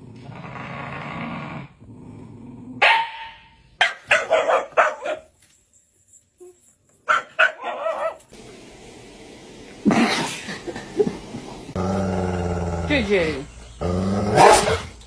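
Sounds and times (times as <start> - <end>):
dog barking: 2.8 - 5.3, 7.1 - 8.2, 14.3 - 14.9.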